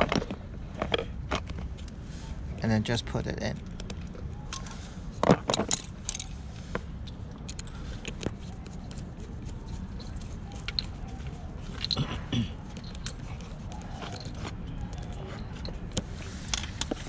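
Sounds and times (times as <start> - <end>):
low steady hum: 0.0 - 17.0
small metal parts clinking: 3.5 - 6.4, 7.0 - 17.0.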